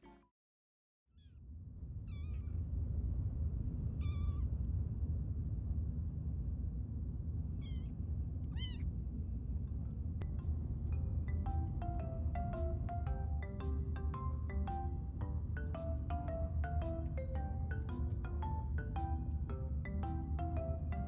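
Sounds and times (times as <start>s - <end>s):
low rumble: 1.4s - 20.5s
kittens meowing: 7.6s - 7.9s.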